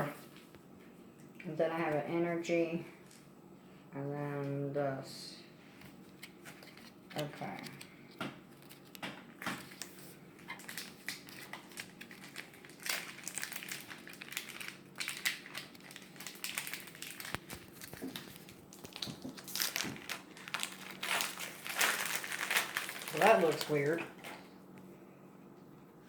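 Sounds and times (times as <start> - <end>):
foil wrapper crinkling: 6.1 - 24.5.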